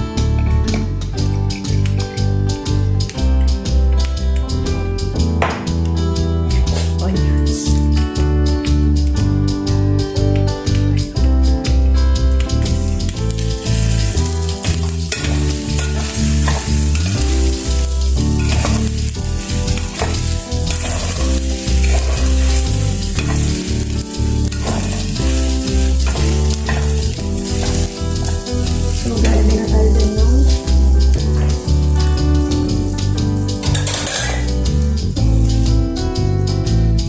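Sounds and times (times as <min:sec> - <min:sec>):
background music: 0:00.0 - 0:37.0
food sizzling in hot oil: 0:11.4 - 0:37.0
utensil scraping a pan: 0:13.0 - 0:29.5, 0:33.6 - 0:34.6.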